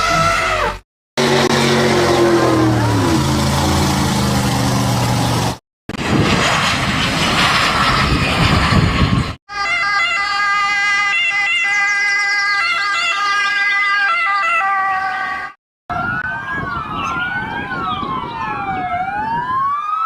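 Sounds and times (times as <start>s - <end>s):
cartoon engine hum: 0.0s - 5.6s
loud rushing noise: 1.2s - 9.4s
siren with stepped tones: 9.5s - 20.0s.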